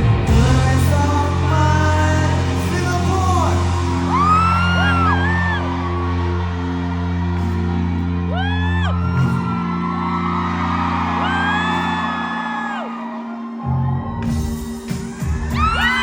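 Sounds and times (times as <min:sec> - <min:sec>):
drums and bass beat: 0:00.0 - 0:06.6, 0:14.1 - 0:16.0
held low chords: 0:00.0 - 0:16.0.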